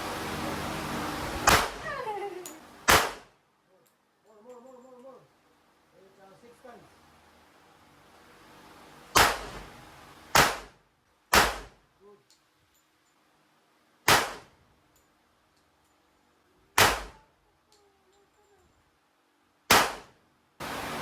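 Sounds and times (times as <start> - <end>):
handgun shots: 1.4 - 1.8, 2.9 - 3.3, 9.2 - 9.6, 10.3 - 10.7, 11.3 - 11.7, 14.1 - 14.5, 16.8 - 17.2, 19.7 - 20.1.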